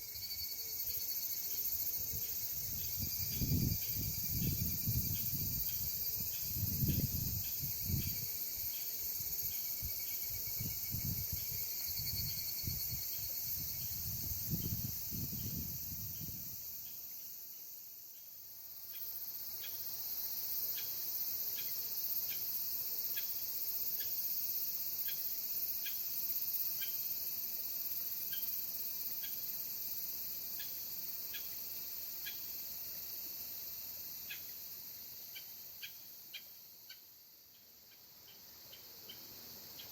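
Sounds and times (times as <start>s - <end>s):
insects buzzing shrilly: 0.0s - 17.8s
short ticking insect call: 0.0s - 39.9s.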